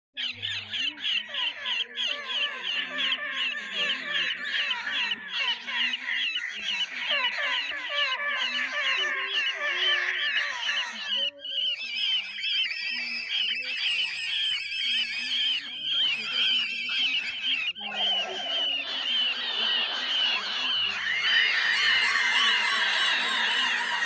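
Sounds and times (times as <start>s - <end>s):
cartoon rabbit screaming: 21.0s - 24.0s.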